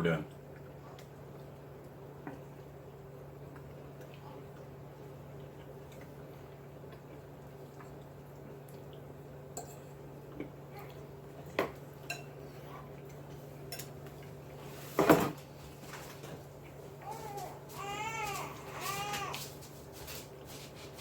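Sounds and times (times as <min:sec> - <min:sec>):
tableware clatter: 0:14.9 - 0:15.4.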